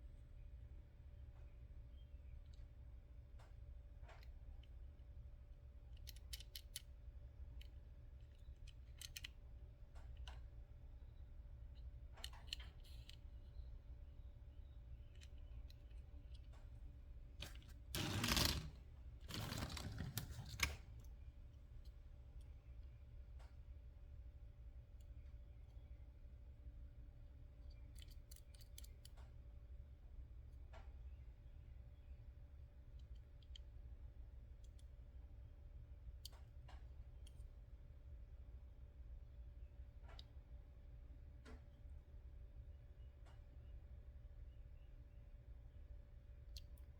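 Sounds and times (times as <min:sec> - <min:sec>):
low steady hum: 0:00.0 - 0:46.9
light clicks of toy vehicles: 0:03.3 - 0:04.8, 0:05.8 - 0:10.6, 0:11.7 - 0:13.6, 0:15.0 - 0:16.7, 0:27.6 - 0:29.4, 0:32.8 - 0:33.8, 0:34.5 - 0:35.0, 0:36.2 - 0:37.6, 0:40.0 - 0:40.4, 0:46.5 - 0:46.9
toy cars clicking and tapping: 0:08.3 - 0:09.3
toy scraping: 0:17.4 - 0:20.9.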